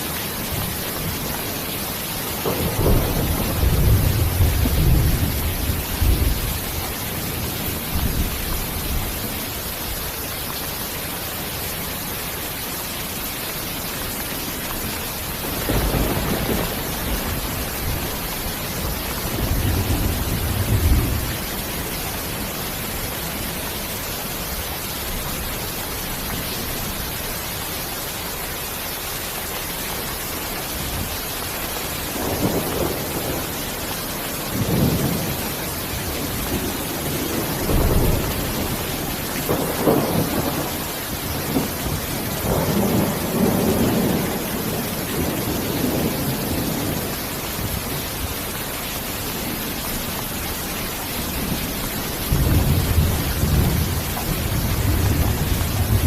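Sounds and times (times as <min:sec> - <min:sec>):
heavy rain hissing: 0:00.0 - 0:56.0
distant thunder rumbling: 0:02.0 - 0:09.7, 0:15.2 - 0:22.6, 0:34.5 - 0:48.2, 0:51.2 - 0:56.0.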